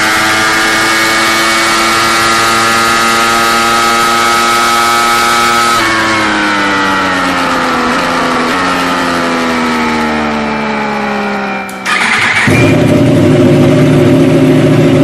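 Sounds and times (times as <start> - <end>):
motorcycle engine and exhaust: 0.0 - 15.0
sharp click: 11.7 - 11.9.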